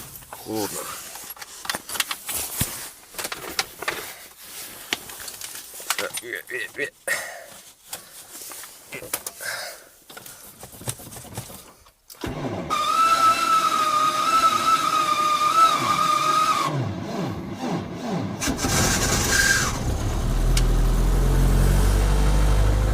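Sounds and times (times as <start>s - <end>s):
engine starter cranking: 17.6s - 20.8s.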